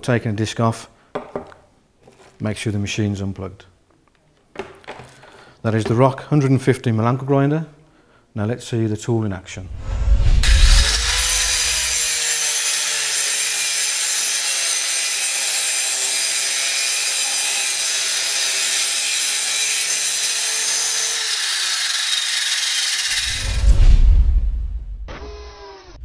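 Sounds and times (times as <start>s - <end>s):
angle grinder grinding: 10.4s - 23.6s, 25.1s - 26.0s.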